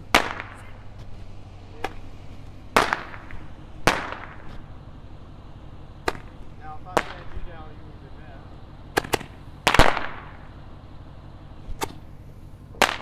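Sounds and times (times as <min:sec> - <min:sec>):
fireworks bangs and pops: 0:00.0 - 0:04.8, 0:06.0 - 0:07.8, 0:08.9 - 0:10.6, 0:11.4 - 0:13.0.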